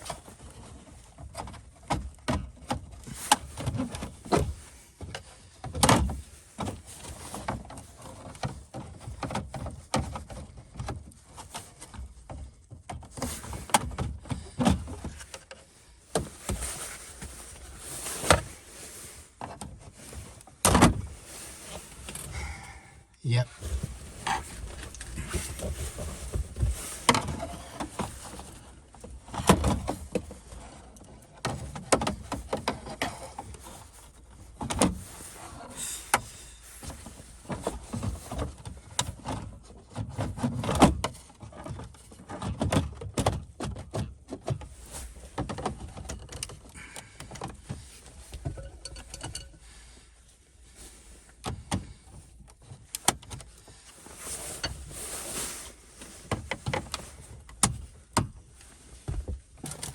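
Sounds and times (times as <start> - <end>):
quiet rustling: 0.0 - 42.4, 43.5 - 59.9
clicks and knocks of tools: 48.3 - 49.6.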